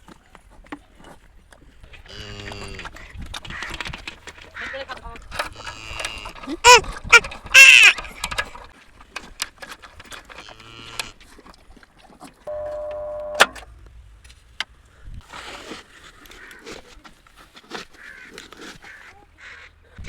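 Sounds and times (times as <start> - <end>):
loud animal call: 5.6 - 8.0
steady tone: 12.5 - 13.7.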